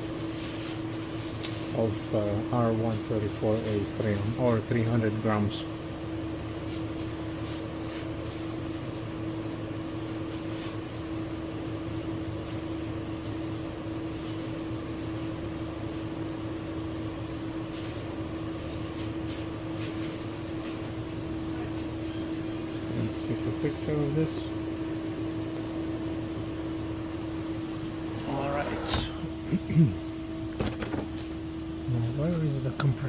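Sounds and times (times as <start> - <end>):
refrigerator humming: 0.0 - 33.0.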